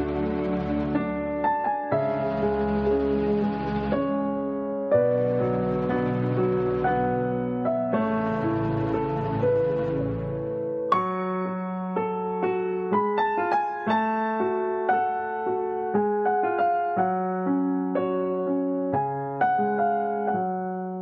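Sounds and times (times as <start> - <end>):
gentle electric piano melody: 0.0 - 21.0
sustained bass notes: 5.2 - 7.6, 8.2 - 10.5.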